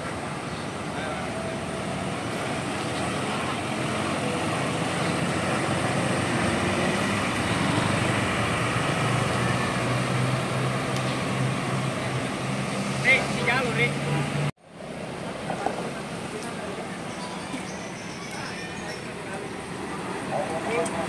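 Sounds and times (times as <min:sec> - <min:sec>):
diesel bus engine drone: 0:00.0 - 0:21.0.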